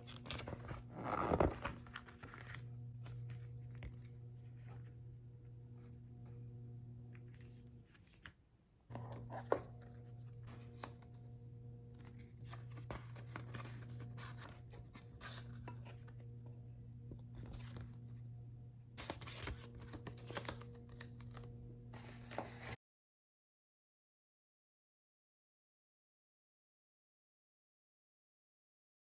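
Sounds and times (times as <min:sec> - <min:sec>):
low electrical hum: 0:00.0 - 0:22.8.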